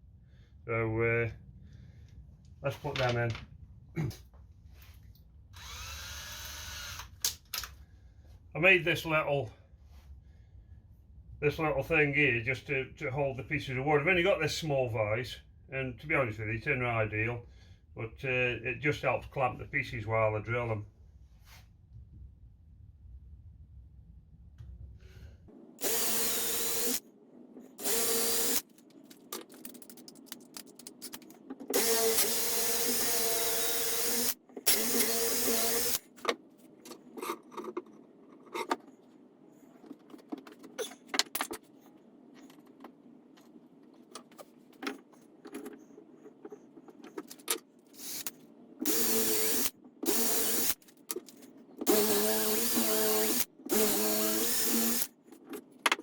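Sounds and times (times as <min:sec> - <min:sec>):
electric drill boring wood: 0:05.6 - 0:07.1, 0:25.8 - 0:27.0, 0:27.8 - 0:28.6, 0:31.7 - 0:36.0, 0:48.0 - 0:50.8, 0:51.9 - 0:55.1.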